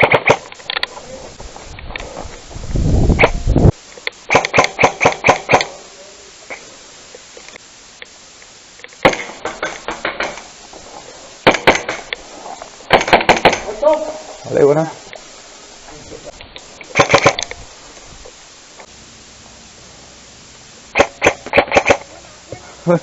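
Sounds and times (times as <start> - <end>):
airsoft gun shots: 0.0 - 0.5, 4.3 - 5.7, 9.0 - 10.5, 11.4 - 12.1, 12.9 - 13.8, 16.9 - 17.5, 21.0 - 22.1.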